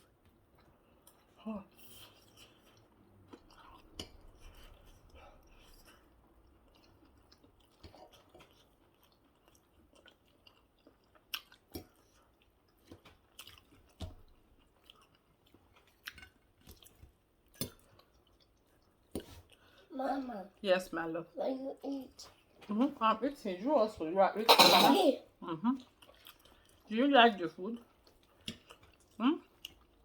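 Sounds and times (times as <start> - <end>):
quiet chewing: 0.0 - 19.9, 25.6 - 26.9, 27.7 - 30.0.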